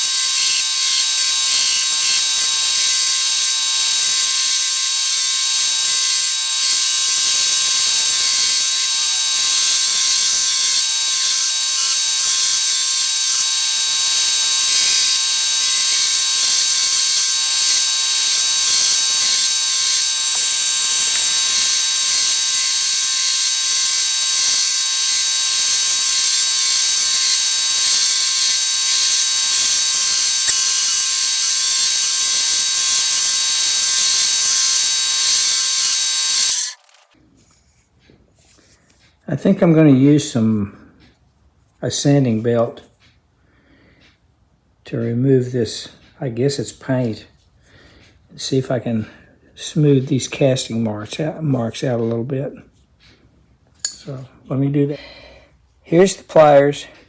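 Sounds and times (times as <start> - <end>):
belt sander whine and hiss: 0.0 - 37.2.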